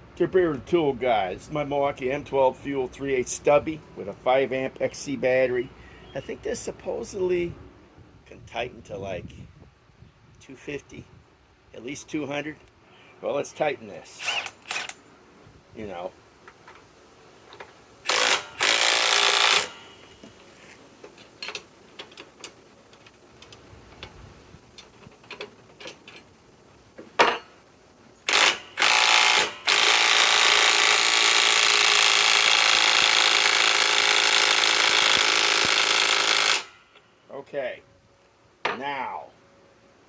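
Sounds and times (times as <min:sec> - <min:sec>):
impact wrench hammering: 0:27.2 - 0:27.5, 0:28.3 - 0:36.8.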